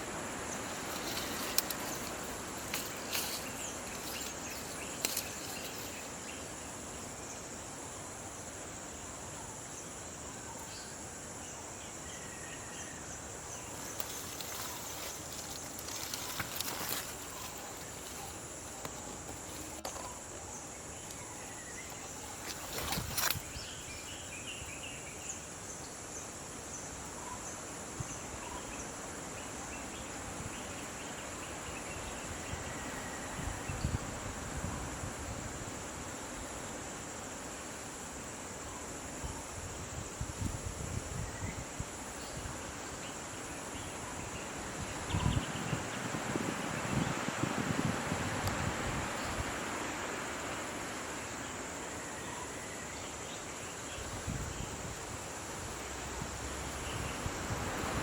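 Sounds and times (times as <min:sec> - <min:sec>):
crickets chirping: 0:00.0 - 0:58.0
sharp crackles: 0:00.6 - 0:06.1.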